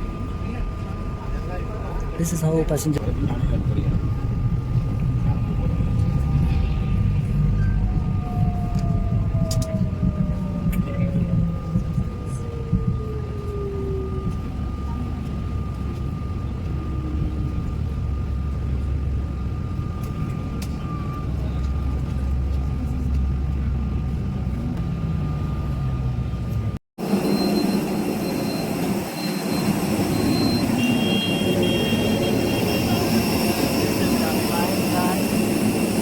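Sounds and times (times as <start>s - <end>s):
bus engine rumble: 0.0s - 26.8s
jet airliner engines whining: 0.0s - 36.0s.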